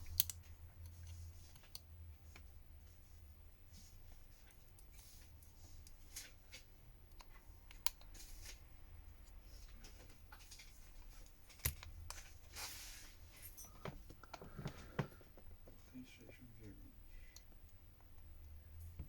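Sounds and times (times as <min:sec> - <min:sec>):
phone parts clicking and scraping: 0:00.0 - 0:01.9, 0:05.7 - 0:08.6, 0:09.7 - 0:15.6.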